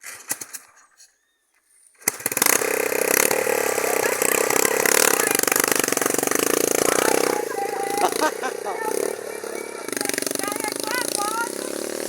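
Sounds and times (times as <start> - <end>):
small motorcycle engine running: 2.0 - 12.0.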